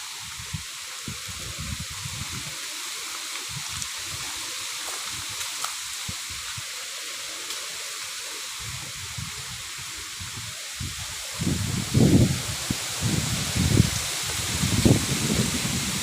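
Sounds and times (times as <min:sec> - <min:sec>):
wind rushing through bamboo leaves: 0:00.0 - 0:16.0
wind gusts buffeting microphone: 0:00.2 - 0:02.6, 0:08.6 - 0:16.0.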